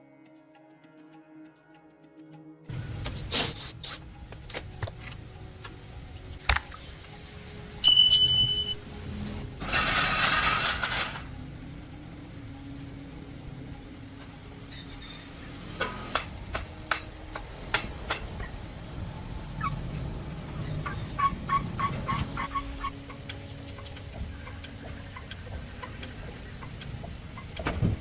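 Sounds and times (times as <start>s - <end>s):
metal knocks and clanks: 9.6s - 11.3s.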